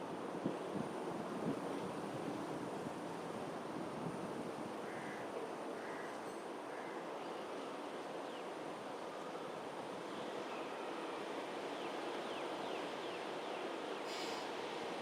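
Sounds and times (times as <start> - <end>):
brief hiss: 14.0 - 14.8.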